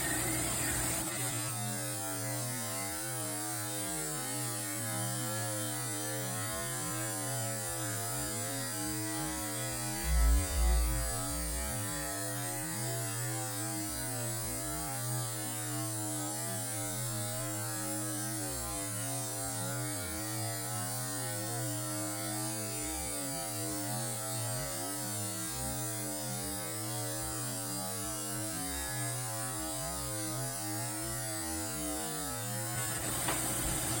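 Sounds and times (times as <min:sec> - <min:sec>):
electrical hum: 0:09.8 - 0:12.1.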